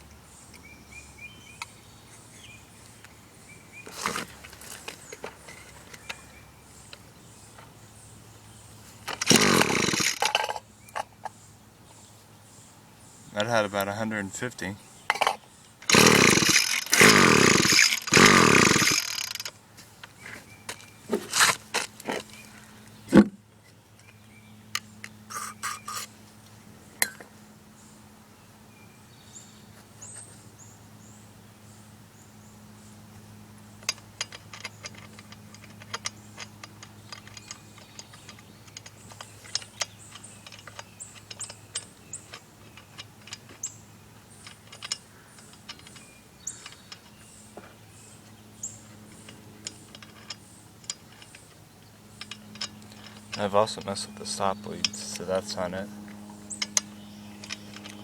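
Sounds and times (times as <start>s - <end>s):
steady low hum: 0.0s - 58.0s
clicks of tools being handled: 33.8s - 43.7s, 44.3s - 47.7s, 49.1s - 58.0s.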